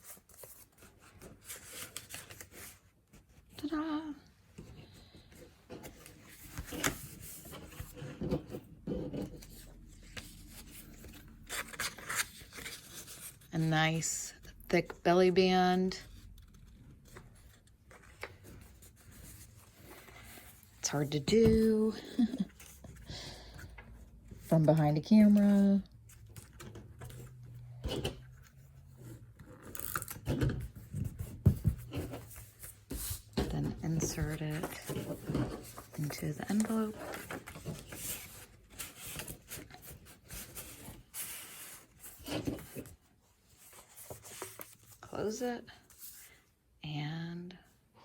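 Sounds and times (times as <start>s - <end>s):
paper rustling: 9.3s - 13.5s, 28.0s - 45.0s.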